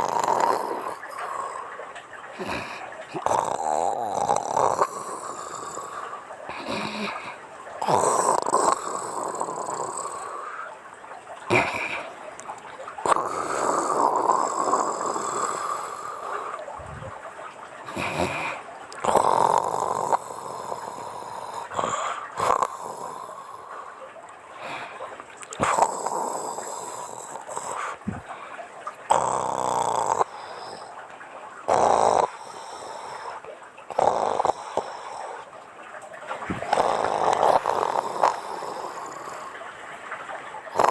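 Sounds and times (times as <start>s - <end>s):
woman snoring: 0.0s - 1.2s, 2.4s - 7.2s, 7.8s - 10.3s, 13.1s - 15.9s, 18.0s - 23.3s, 29.1s - 30.3s, 36.7s - 39.4s.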